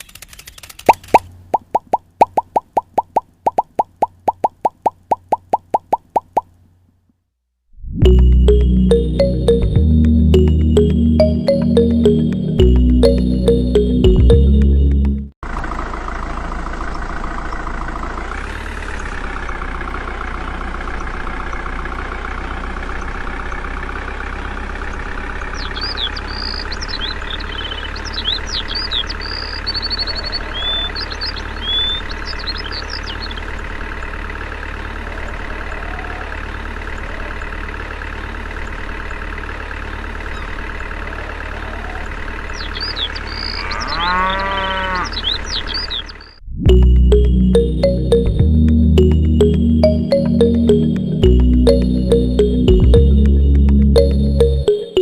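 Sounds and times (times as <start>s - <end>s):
tractor engine idling: 8.0s - 43.6s, 45.1s - 55.0s
birds chirping: 24.2s - 34.1s, 39.8s - 55.0s
cow mooing: 43.5s - 45.3s.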